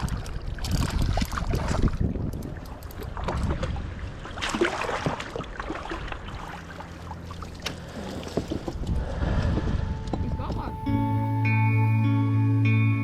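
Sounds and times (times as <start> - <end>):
water splashing: 0.0 - 9.9.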